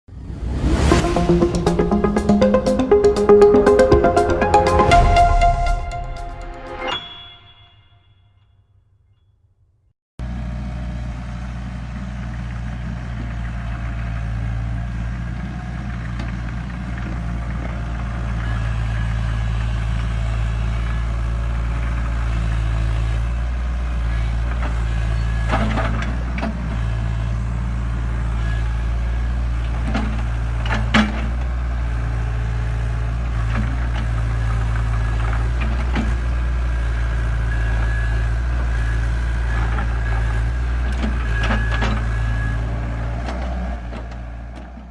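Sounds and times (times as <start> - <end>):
excavator diesel engine running: 10.2 - 44.8.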